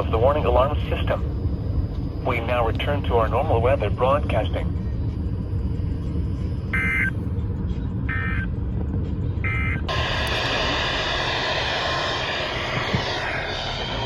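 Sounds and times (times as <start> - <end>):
radio static: 9.9 - 14.0.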